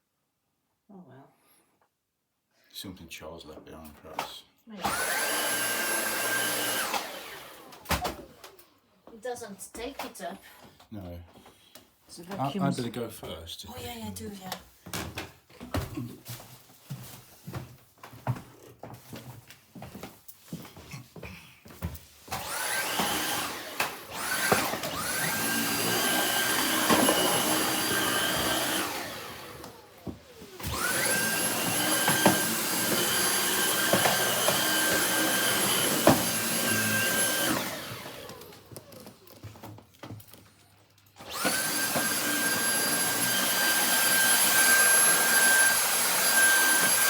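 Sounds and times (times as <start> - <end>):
vacuum cleaner whining: 4.1 - 8.8, 12.3 - 13.1, 14.8 - 47.0.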